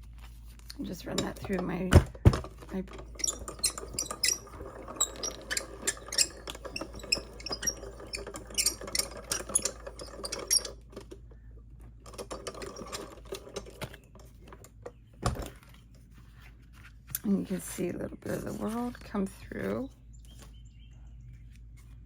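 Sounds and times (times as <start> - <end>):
embossing machine clicking and rattling: 0.9 - 11.4, 12.0 - 15.6.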